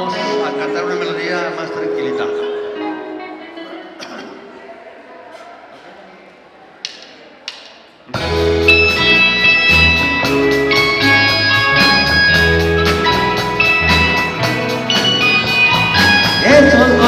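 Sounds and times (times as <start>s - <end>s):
slow song with guitar and beat: 8.2s - 17.0s.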